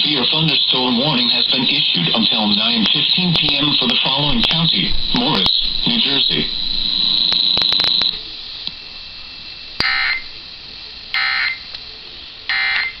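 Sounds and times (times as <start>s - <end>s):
steady high whine: 0.0s - 13.0s
buzzing digital tone bursts: 2.6s - 8.2s
clicks: 7.2s - 8.8s.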